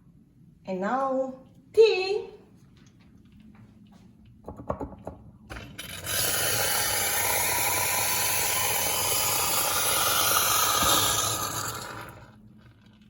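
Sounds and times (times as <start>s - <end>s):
hot water tap rushing: 5.5s - 12.4s.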